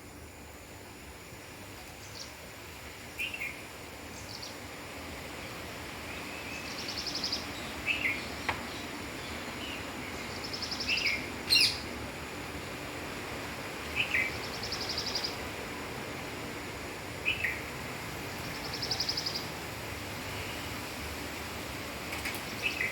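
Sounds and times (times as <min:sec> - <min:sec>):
steady background hiss: 0:00.0 - 0:22.9
small birds chirping: 0:01.9 - 0:02.4, 0:03.0 - 0:04.7, 0:05.4 - 0:12.0, 0:13.8 - 0:15.5, 0:17.2 - 0:17.7, 0:18.4 - 0:19.6, 0:22.2 - 0:22.9.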